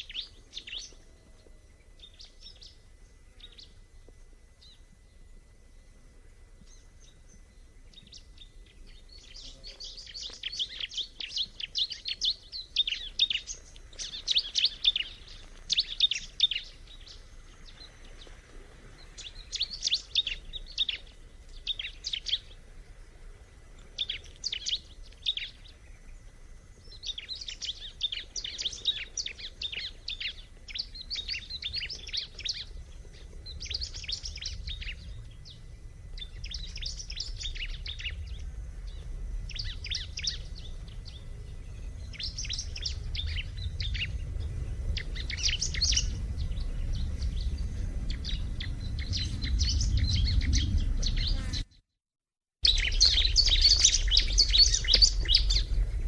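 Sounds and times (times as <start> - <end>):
bird singing high chirps: 0.0 - 1.3, 6.7 - 18.3, 19.0 - 22.6, 26.8 - 32.8, 33.4 - 51.8, 52.6 - 56.0
low background rumble: 0.0 - 51.7, 52.6 - 56.0.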